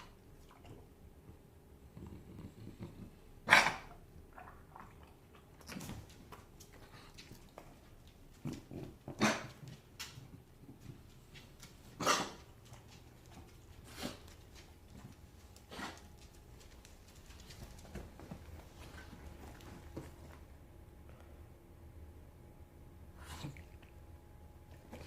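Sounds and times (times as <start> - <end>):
puppy coughing: 3.5 - 4.0, 9.1 - 9.6, 12.0 - 12.5.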